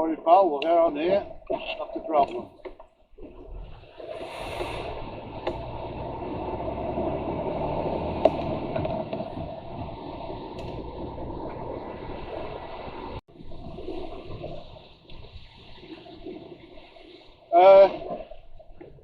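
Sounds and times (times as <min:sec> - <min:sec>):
road noise inside cab: 0:04.3 - 0:13.3
lorry engine drone: 0:04.4 - 0:13.2.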